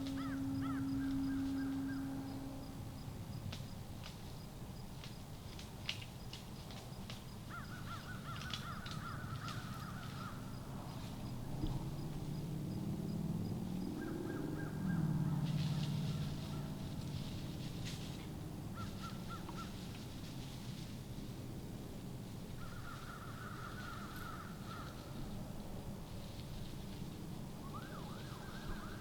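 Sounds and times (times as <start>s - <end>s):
crows cawing: 0.0s - 2.5s, 7.5s - 10.6s, 13.9s - 16.9s, 18.7s - 19.8s, 22.6s - 25.2s
low rumble: 0.0s - 3.5s.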